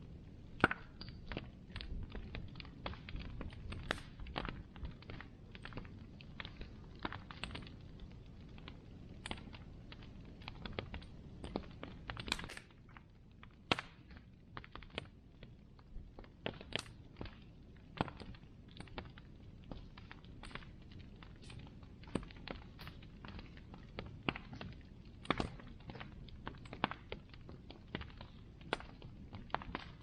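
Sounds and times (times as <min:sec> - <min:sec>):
bonfire crackling and popping: 0:00.0 - 0:30.0
flames rushing: 0:13.6 - 0:30.0.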